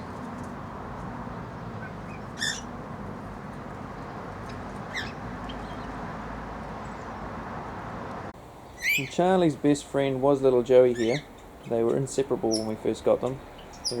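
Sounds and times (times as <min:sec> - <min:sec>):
cockatiels chirping: 0:01.8 - 0:02.7, 0:04.5 - 0:05.9, 0:08.8 - 0:09.2, 0:10.9 - 0:12.8, 0:13.6 - 0:14.0
background hiss: 0:08.1 - 0:14.0.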